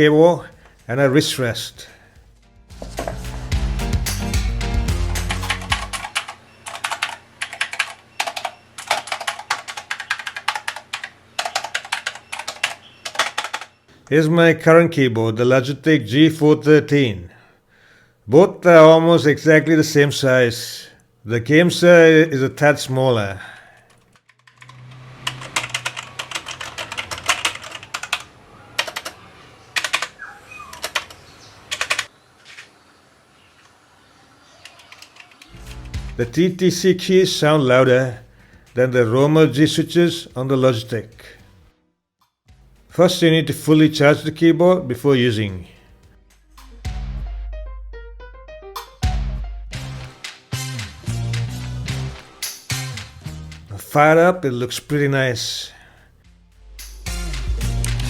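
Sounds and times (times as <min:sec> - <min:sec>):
mechanical keyboard keys clicking: 0:05.1 - 0:13.7, 0:23.9 - 0:29.2, 0:29.8 - 0:32.1, 0:34.6 - 0:36.2.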